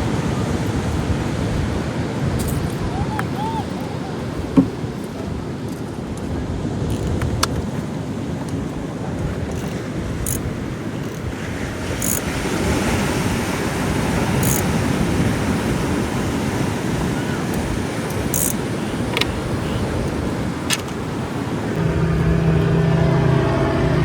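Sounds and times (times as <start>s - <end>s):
breaking surf: 0.0s - 24.0s
wind on microphone: 0.0s - 24.0s
sharp ticks: 9.5s - 11.3s, 11.9s - 12.3s, 14.4s - 14.8s, 17.5s - 19.4s.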